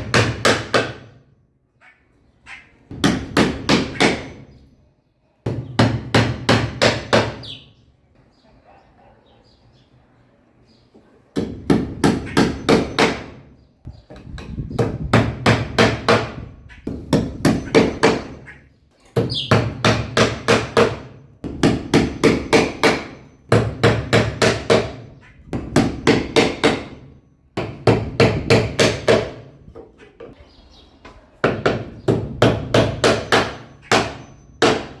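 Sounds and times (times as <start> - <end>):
hammer driving a nail: 0.0 - 1.1, 2.9 - 4.4, 5.5 - 7.4, 14.4 - 18.4, 19.2 - 29.5, 31.4 - 35.0.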